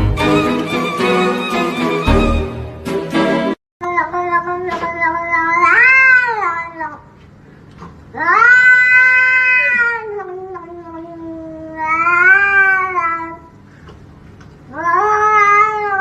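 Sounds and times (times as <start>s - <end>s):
cat yowling: 4.1s - 7.0s, 8.2s - 13.5s, 14.7s - 16.0s.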